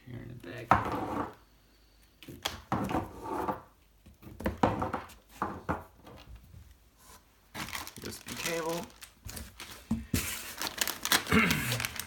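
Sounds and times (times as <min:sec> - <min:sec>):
rustling: 0:07.0 - 0:12.0.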